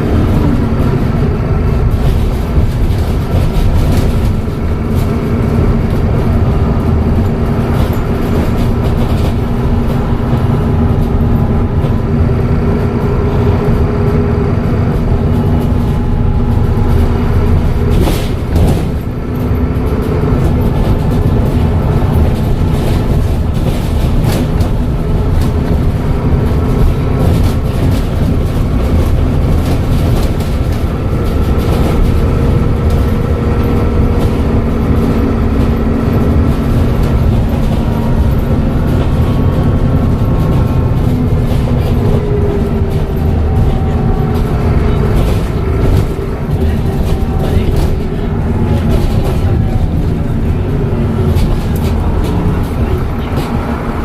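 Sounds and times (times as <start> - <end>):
bus engine rumble: 0.0 - 54.0.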